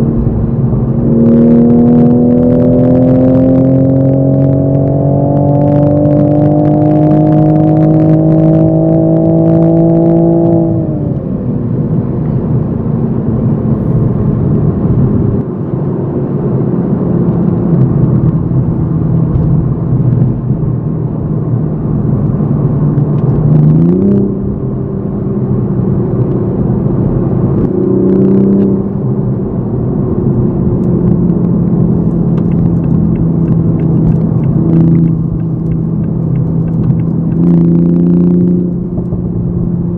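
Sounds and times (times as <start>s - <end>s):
car engine revving: 0.0s - 39.9s
road noise: 0.0s - 39.9s.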